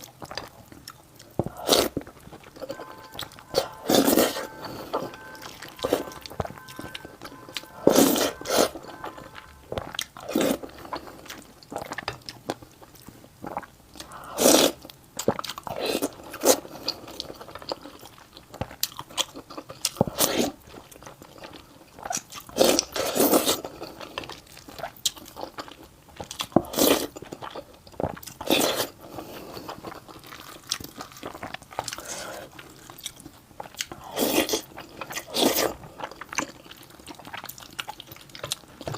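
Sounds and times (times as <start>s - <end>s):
person chewing food: 0.0s - 38.9s.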